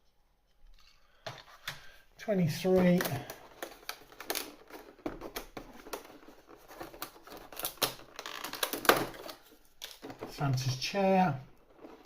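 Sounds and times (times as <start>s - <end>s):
cardboard clicks taps and crinkles: 2.6s - 10.8s.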